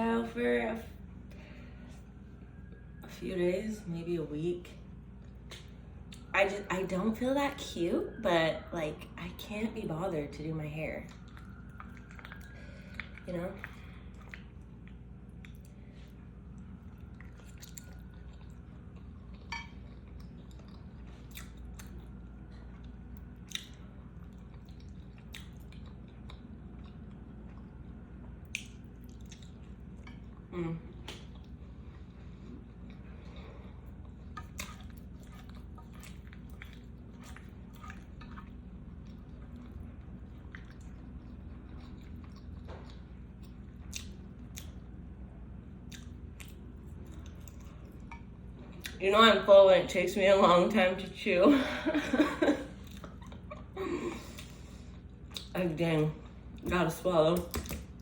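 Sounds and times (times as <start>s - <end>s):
chewing food: 11.0s - 49.0s, 51.9s - 56.7s
wet mouth clicks: 28.5s - 29.5s.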